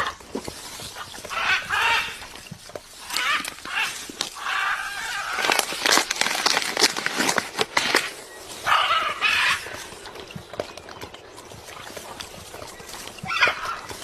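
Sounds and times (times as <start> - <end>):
animal squealing cries: 1.3 - 2.3, 3.0 - 5.7, 13.2 - 13.9.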